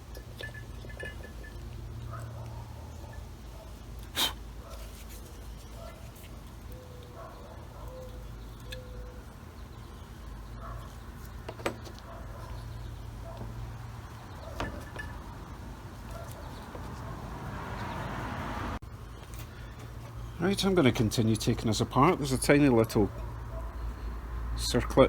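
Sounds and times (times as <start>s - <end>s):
hiss: 4.1s - 4.4s.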